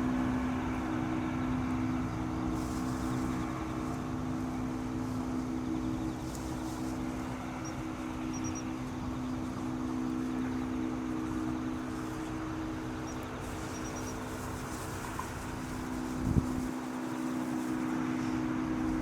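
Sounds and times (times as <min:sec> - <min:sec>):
low mechanical hum: 0:00.0 - 0:19.0.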